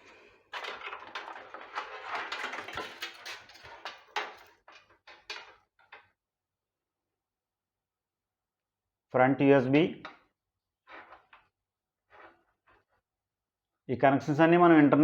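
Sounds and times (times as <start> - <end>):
wires rustling: 0.0 - 6.0.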